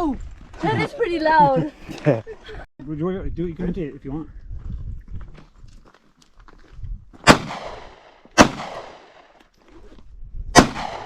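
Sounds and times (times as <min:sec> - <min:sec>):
handgun shots: 0:07.2 - 0:09.2, 0:10.6 - 0:11.0.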